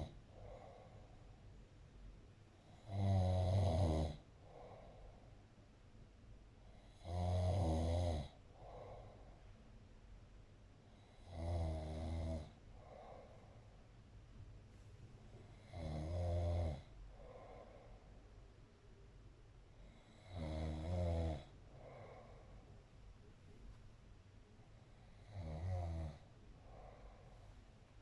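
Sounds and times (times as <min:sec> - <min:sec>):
faint breath: 0:00.0 - 0:01.6, 0:04.4 - 0:05.5, 0:08.4 - 0:09.6, 0:12.6 - 0:14.1, 0:16.9 - 0:18.6, 0:21.5 - 0:22.9, 0:26.2 - 0:28.0
loud snoring: 0:02.8 - 0:04.2, 0:06.8 - 0:08.4, 0:11.2 - 0:12.6, 0:15.6 - 0:16.9, 0:20.1 - 0:21.5, 0:25.1 - 0:26.2.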